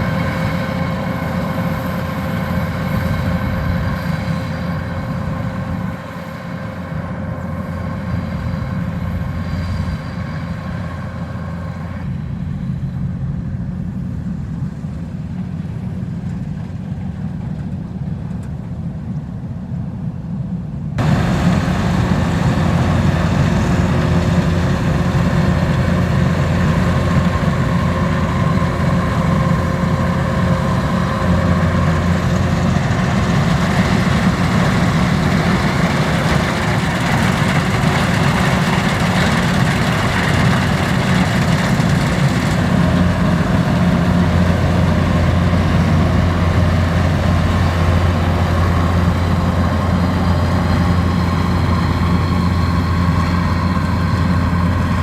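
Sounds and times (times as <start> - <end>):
combine harvester diesel engine: 0.0 - 55.0
rushing noise: 21.0 - 55.0.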